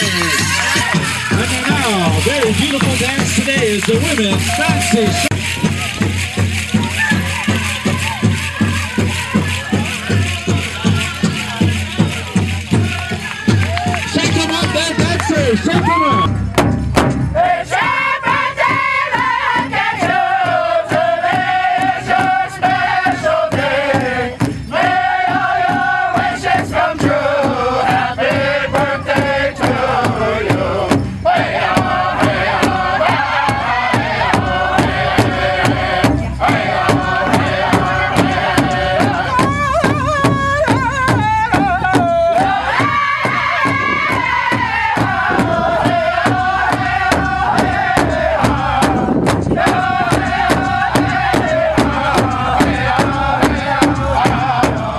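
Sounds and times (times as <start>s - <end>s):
big drum steady beat: 0.0s - 54.9s
singers chanting in high voices: 17.4s - 54.9s.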